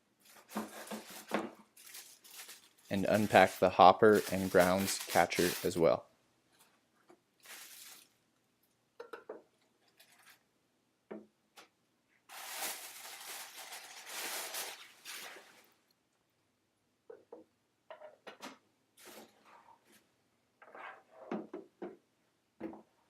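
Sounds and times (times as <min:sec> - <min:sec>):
packaging rustling: 0:00.2 - 0:06.0, 0:07.4 - 0:08.2, 0:12.3 - 0:15.8.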